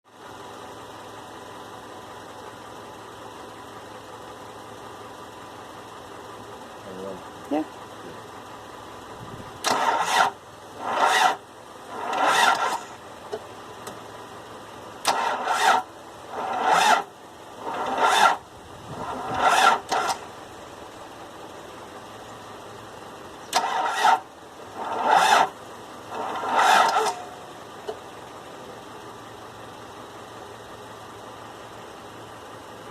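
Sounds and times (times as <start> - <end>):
engine starter cranking: 9.6 - 13.4, 15.0 - 20.3, 23.4 - 28.0.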